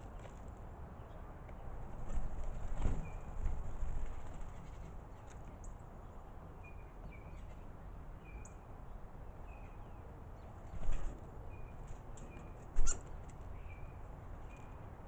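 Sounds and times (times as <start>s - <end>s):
birds chirping: 4.4s - 14.9s.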